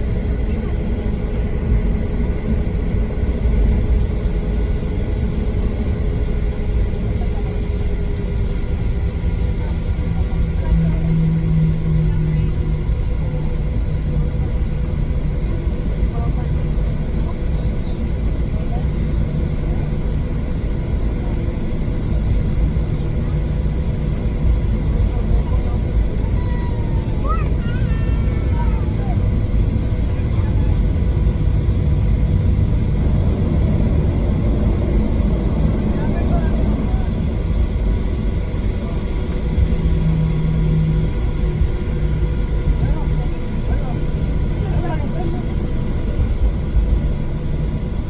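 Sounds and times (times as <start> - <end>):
airplane cabin engine rumble: 0.0 - 48.0
faint steady tones: 0.0 - 48.0.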